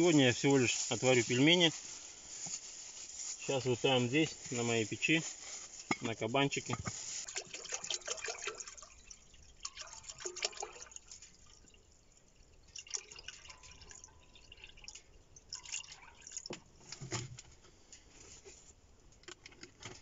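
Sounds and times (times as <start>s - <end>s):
water dripping into a pot: 6.6s - 16.8s.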